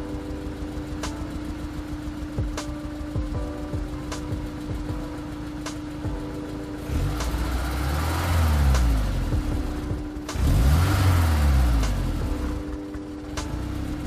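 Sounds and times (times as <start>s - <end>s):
car engine idling and revving: 0.0s - 14.0s.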